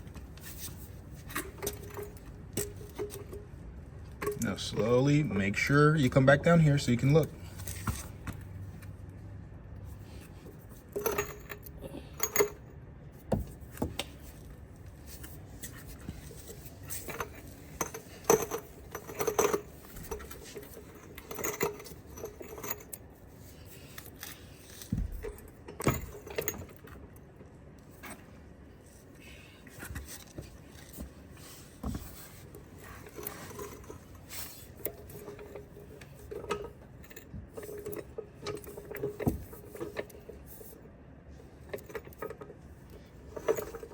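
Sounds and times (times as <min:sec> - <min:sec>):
floor jack clinking and scraping: 0:29.8 - 0:40.8.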